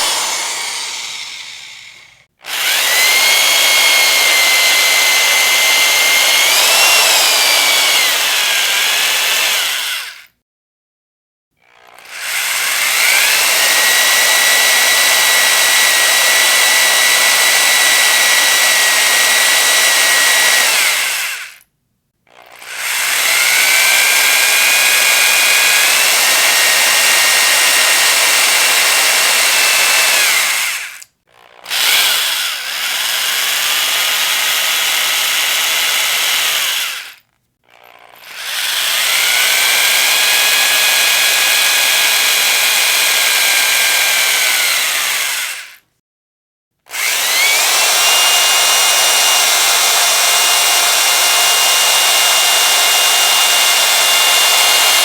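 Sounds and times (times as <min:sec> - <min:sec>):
electric drill whining: 0:00.0 - 0:10.3, 0:11.6 - 0:21.6, 0:22.3 - 0:45.8, 0:46.9 - 0:55.0.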